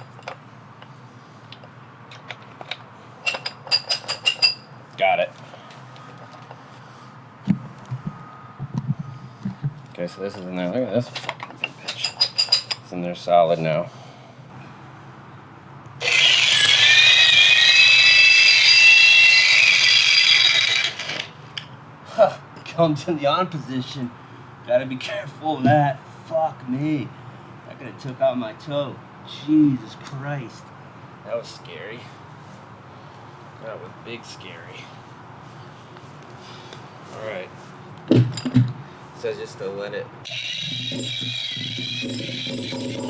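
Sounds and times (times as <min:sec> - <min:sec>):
jackhammer running with high whine: 0:16.0 - 0:21.4, 0:40.3 - 0:43.0.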